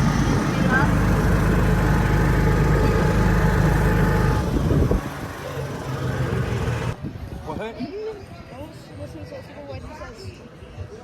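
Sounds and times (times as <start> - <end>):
vehicle engine humming: 0.0 - 7.0.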